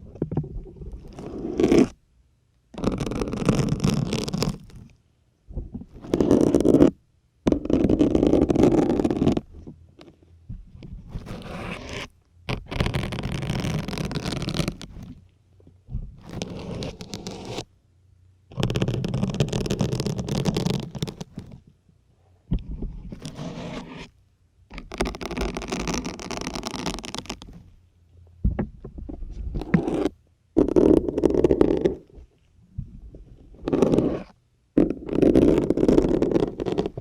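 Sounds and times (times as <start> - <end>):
needles scraping into sponge: 0.8 - 2.0, 5.9 - 9.6, 11.0 - 15.2, 16.2 - 17.7, 18.5 - 21.6, 22.8 - 24.1, 24.7 - 27.6, 29.3 - 32.3, 33.2 - 37.0.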